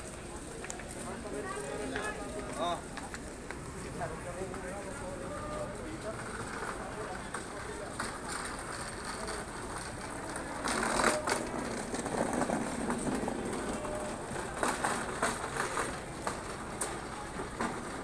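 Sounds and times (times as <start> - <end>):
rumbling street noise: 0.0 - 18.0
small clicks and clatters: 6.0 - 18.0.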